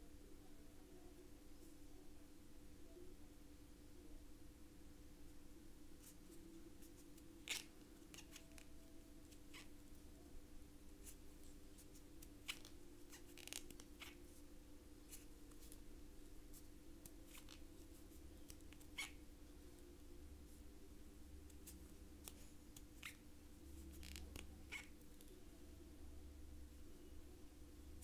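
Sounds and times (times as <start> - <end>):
low steady hum: 0.0 - 28.0.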